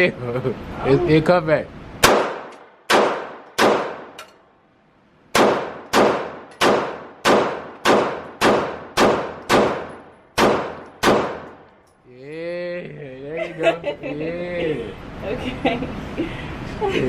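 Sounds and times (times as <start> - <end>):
pistol shots with ringing tail: 2.0 - 4.3, 5.3 - 11.7.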